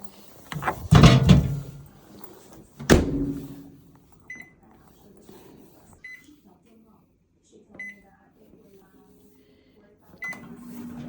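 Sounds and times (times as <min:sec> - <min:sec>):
clattering and knocking: 0:00.5 - 0:01.9
microwave door thunk: 0:00.5 - 0:01.9, 0:02.8 - 0:03.7.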